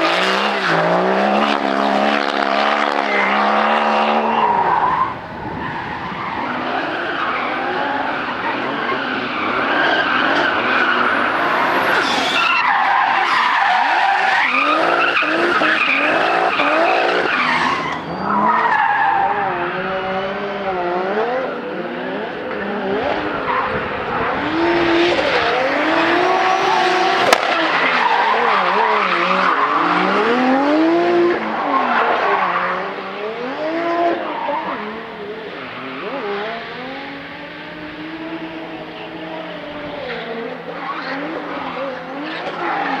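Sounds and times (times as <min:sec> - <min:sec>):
car engines revving: 0:00.0 - 0:43.0
tyres squealing: 0:04.2 - 0:20.0.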